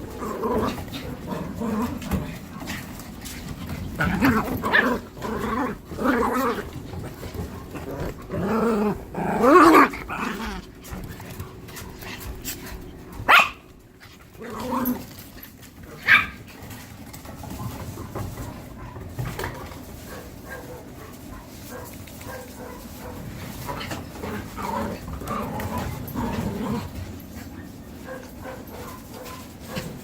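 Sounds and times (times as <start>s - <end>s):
puppies growling: 0.0s - 30.0s
dog yapping: 13.3s - 13.7s, 16.0s - 16.4s.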